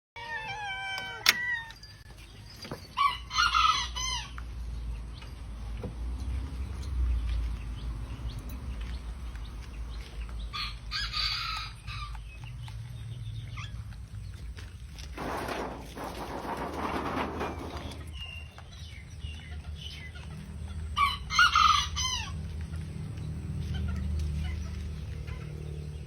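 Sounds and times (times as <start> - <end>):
chickens calling: 0.2 - 26.0.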